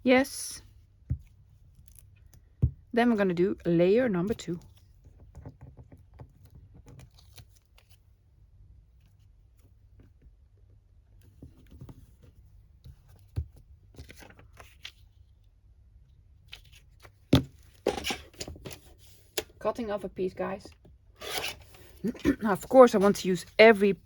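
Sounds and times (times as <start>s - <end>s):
paper being cut: 21.2s - 22.2s.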